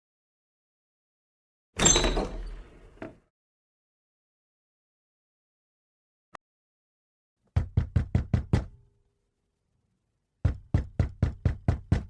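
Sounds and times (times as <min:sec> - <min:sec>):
rapid dull knocking: 0:07.6 - 0:08.8, 0:10.4 - 0:12.0.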